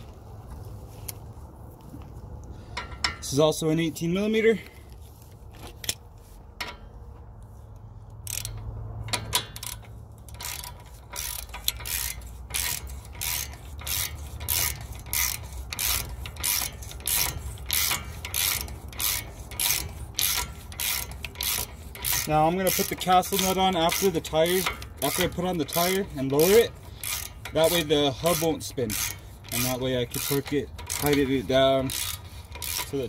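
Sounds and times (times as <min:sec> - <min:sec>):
socket ratchet clicking: 0:08.1 - 0:33.0.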